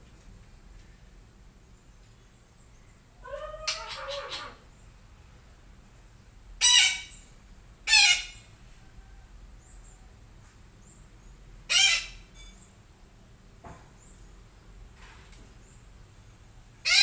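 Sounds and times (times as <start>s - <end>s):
parakeet harsh calls: 6.6s - 7.2s, 7.9s - 8.4s, 11.7s - 12.2s.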